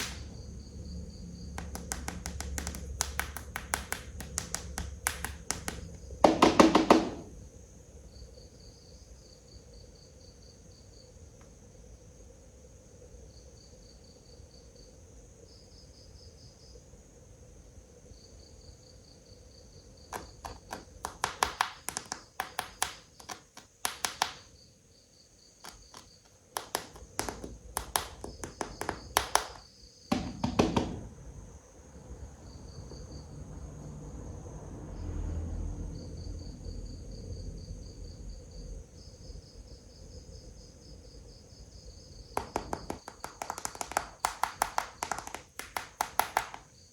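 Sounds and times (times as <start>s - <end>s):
plastic toys clicking on hard surface: 0.0s - 0.3s, 1.6s - 7.3s, 20.1s - 24.5s, 25.6s - 31.1s, 42.4s - 46.7s
crickets chirping: 0.0s - 46.9s.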